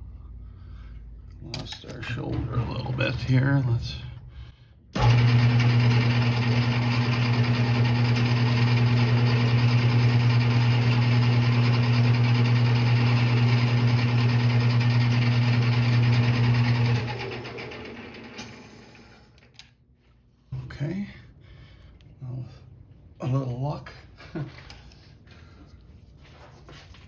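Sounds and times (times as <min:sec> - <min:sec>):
metal lathe humming: 0:05.0 - 0:19.3.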